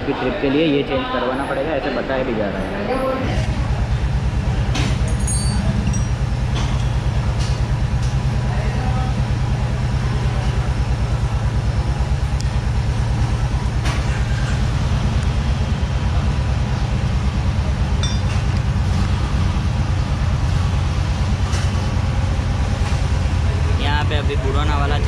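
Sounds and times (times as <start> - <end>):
motor throbbing: 2.3 - 25.0
metallic tool clinks: 5.1 - 6.2, 18.0 - 18.4.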